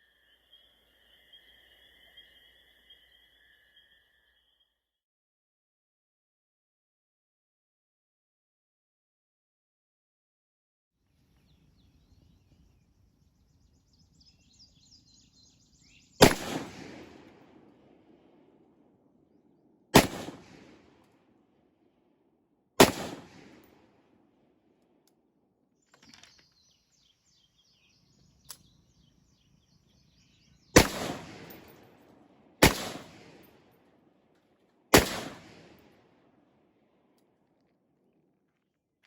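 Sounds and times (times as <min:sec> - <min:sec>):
rifle shots with echo: 0:16.2 - 0:19.0, 0:19.9 - 0:21.5, 0:22.8 - 0:24.3, 0:30.8 - 0:34.2, 0:34.9 - 0:36.5.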